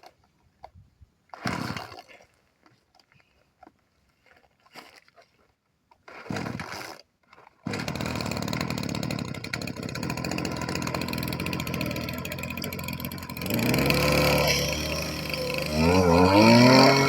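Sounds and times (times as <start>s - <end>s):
small engine pull-started: 1.3s - 2.2s, 6.1s - 7.0s, 7.6s - 17.0s.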